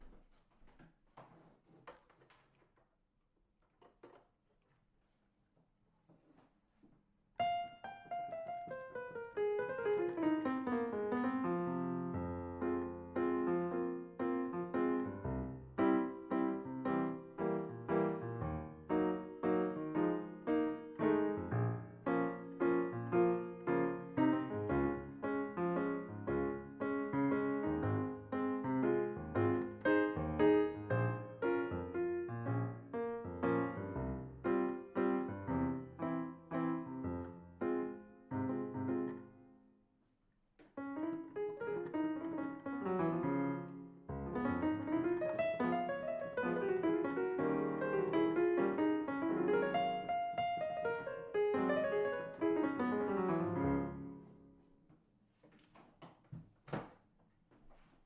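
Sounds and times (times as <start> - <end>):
electronic keyboard piano chords: 7.4 - 39.6, 40.8 - 54.6
faint clicks: 40.6 - 53.4.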